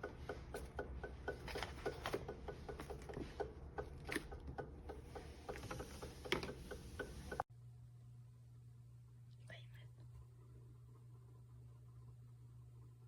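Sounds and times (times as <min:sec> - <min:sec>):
laminator clicking: 0:00.0 - 0:07.4
low steady hum: 0:00.0 - 0:13.0.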